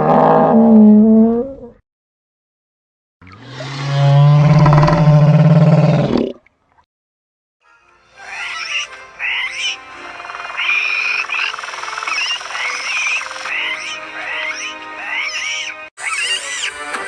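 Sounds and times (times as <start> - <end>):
warbling creature calls: 10.4 - 16.8.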